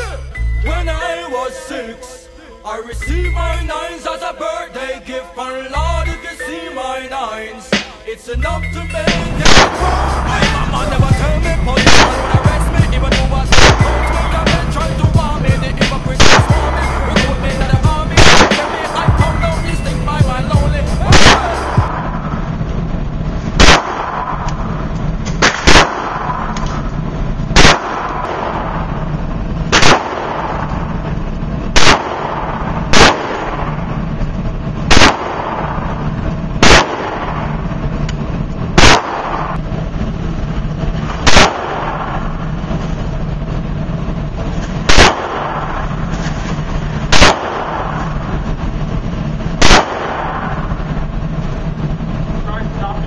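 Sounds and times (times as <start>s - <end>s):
low background hum: 8.3s - 53.0s
gunshots: 9.1s - 22.6s, 23.5s - 34.2s, 34.8s - 38.0s, 38.7s - 39.7s, 40.9s - 43.1s, 44.8s - 48.8s, 49.6s - 51.2s.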